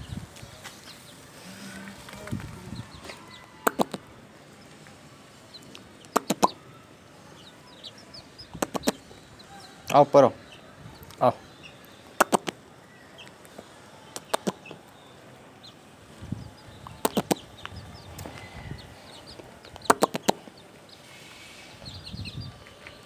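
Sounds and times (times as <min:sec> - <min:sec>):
chickens clucking: 0:00.8 - 0:22.7
sharp taps: 0:03.6 - 0:04.0, 0:06.0 - 0:06.6, 0:08.6 - 0:09.0, 0:12.2 - 0:12.6, 0:14.2 - 0:14.7, 0:17.0 - 0:17.4, 0:19.8 - 0:20.4.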